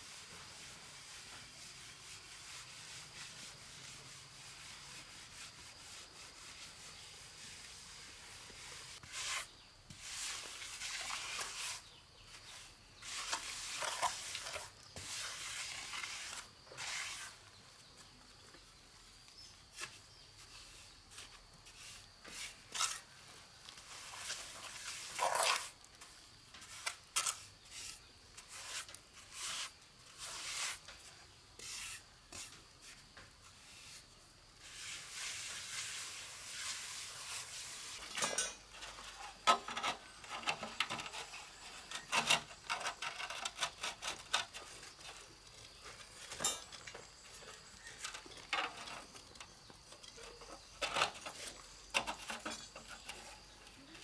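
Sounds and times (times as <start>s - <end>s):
hand tool scraping wet mortar: 4.7s - 17.6s, 21.2s - 25.9s, 26.6s - 31.0s, 34.6s - 54.0s.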